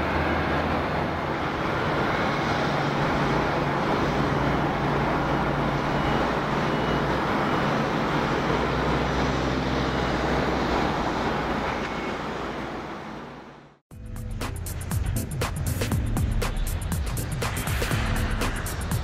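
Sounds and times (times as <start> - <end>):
jet airliner engine rumble: 0.0 - 19.0
background music: 13.9 - 19.0.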